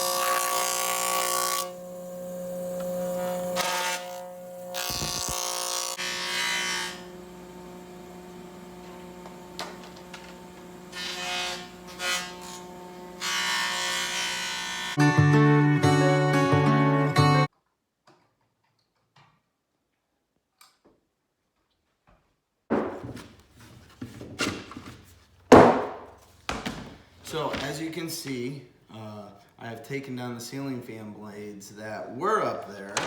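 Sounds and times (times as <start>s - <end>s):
planer motor hum: 0.0s - 15.0s
rushing wood cutting noise: 0.0s - 15.0s.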